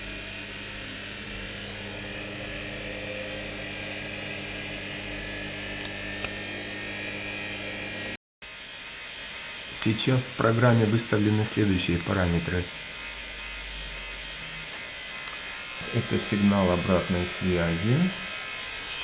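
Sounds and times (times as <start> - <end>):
washing machine motor whining hum: 0.0 - 8.2.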